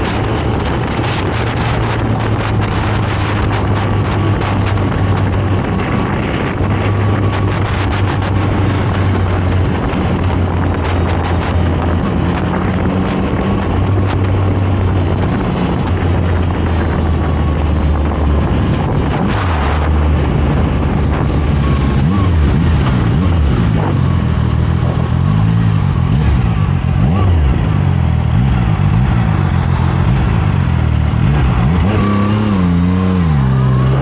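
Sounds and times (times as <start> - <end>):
motorcycle engine running: 0.0 - 34.0
wind noise on microphone: 0.0 - 34.0.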